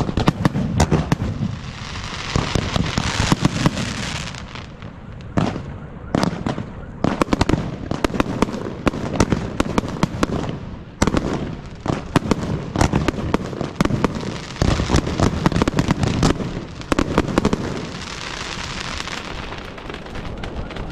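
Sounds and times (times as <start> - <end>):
fireworks hiss: 0.0 - 4.8, 11.3 - 20.9
fireworks bangs and bursts: 0.0 - 20.9.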